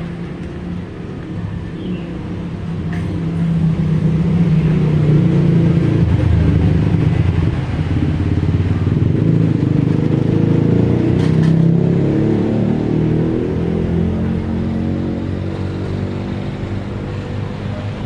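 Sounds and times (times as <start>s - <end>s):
heavy engine humming: 13.8s - 18.0s.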